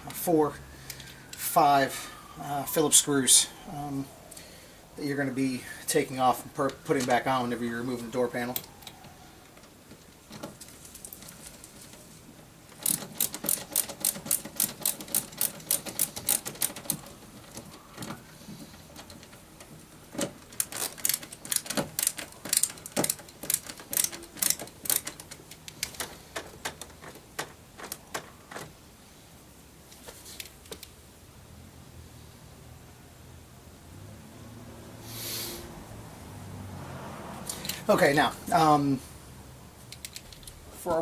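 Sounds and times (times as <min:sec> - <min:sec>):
screwdriver clicking: 0:12.8 - 0:18.1, 0:20.5 - 0:27.0.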